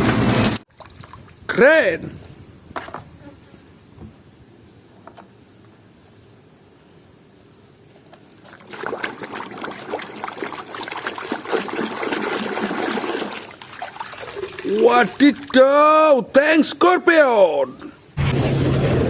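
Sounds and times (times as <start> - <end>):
water splashing and trickling: 0.6 - 1.6, 8.4 - 16.2.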